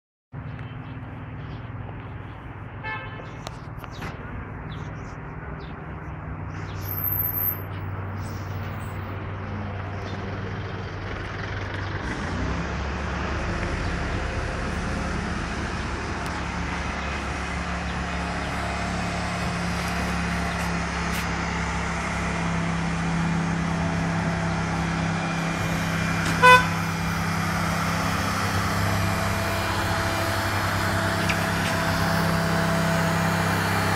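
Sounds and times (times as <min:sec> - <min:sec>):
lift engine running: 0:09.6 - 0:33.9
short horn-like beep: 0:26.4 - 0:26.8.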